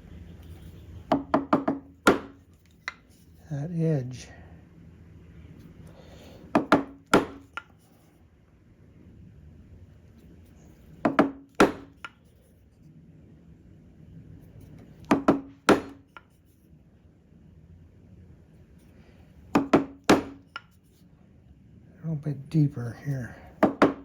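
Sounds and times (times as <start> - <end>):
mallet striking chisel into wood: 1.1 - 3.0, 6.6 - 7.7, 11.0 - 12.2, 15.1 - 16.2, 19.6 - 20.7, 23.6 - 24.0.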